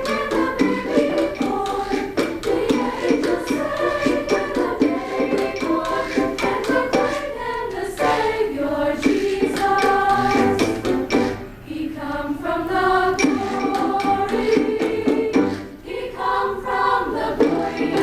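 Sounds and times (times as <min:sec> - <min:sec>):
sharp percussive beats: 0:00.0 - 0:08.4, 0:09.0 - 0:11.6, 0:12.8 - 0:15.8
women's choir singing: 0:00.0 - 0:18.0.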